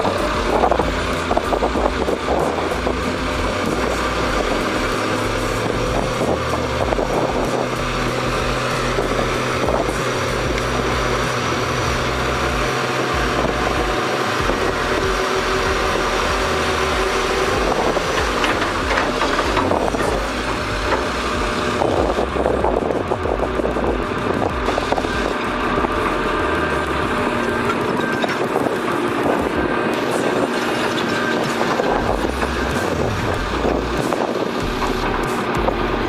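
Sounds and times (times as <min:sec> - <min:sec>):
diesel machinery running: 0:00.0 - 0:36.0
knocks and clanks: 0:12.5 - 0:26.0.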